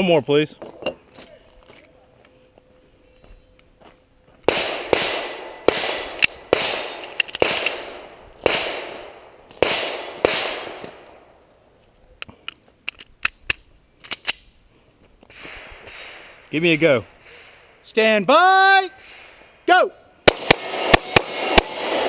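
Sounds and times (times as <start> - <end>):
pistol shots echoing: 4.5 - 11.2, 20.2 - 22.0.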